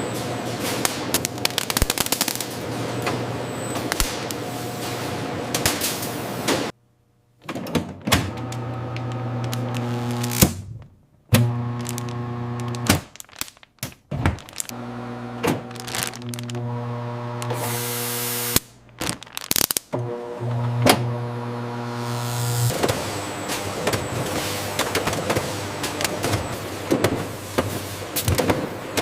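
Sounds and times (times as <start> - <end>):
machinery humming: 11.3 - 12.9, 14.4 - 18.6, 20.0 - 29.0.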